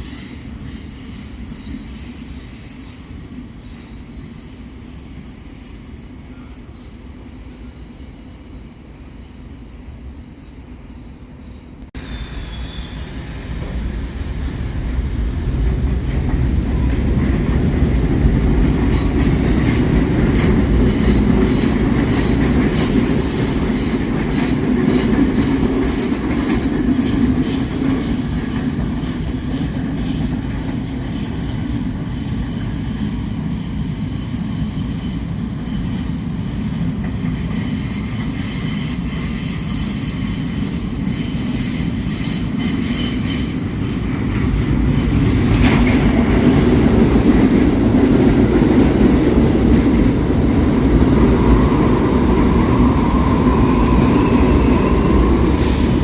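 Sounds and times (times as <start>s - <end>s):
subway train rumbling: 0.0s - 56.0s.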